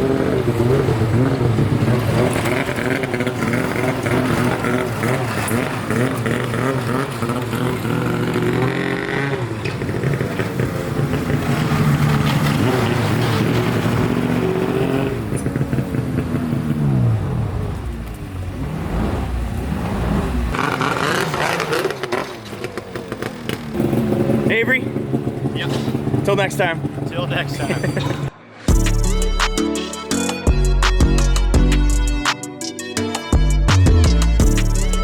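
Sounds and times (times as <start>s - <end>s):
snowmobile engine running: 0.0s - 17.6s.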